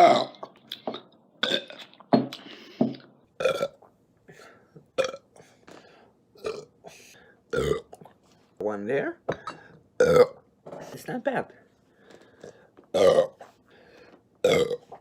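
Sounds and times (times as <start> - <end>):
man burping: 0.0 - 0.6, 1.4 - 1.8, 3.4 - 3.8, 5.0 - 5.4, 6.4 - 6.7, 7.5 - 8.0, 9.3 - 10.4, 12.9 - 13.4, 14.4 - 14.9.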